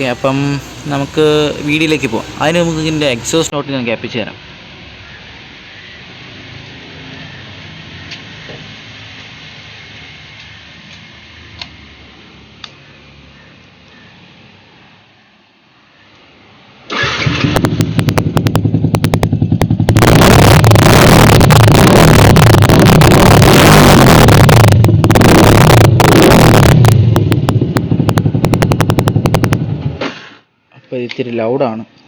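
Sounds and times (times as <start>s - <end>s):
motorcycle engine revving and idling: 16.9s - 30.2s.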